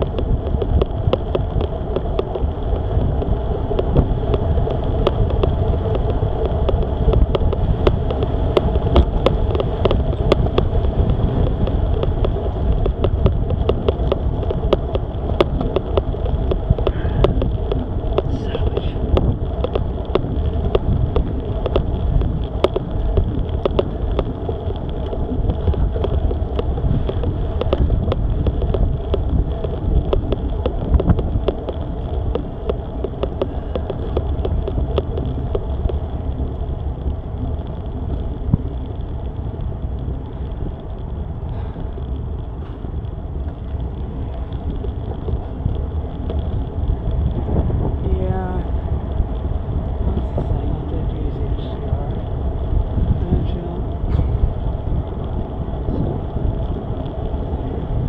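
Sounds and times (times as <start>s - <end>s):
bike rattling: 0.0s - 58.0s
wind rumbling on microphone: 0.0s - 58.0s
heavy breathing: 16.9s - 17.3s.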